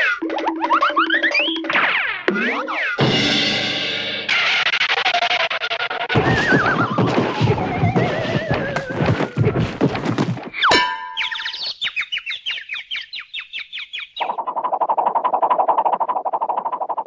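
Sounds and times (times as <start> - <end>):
hoofbeats: 6.2 - 11.0
quick boinging twangs: 10.4 - 11.8
cartoon spring boing: 10.6 - 11.6.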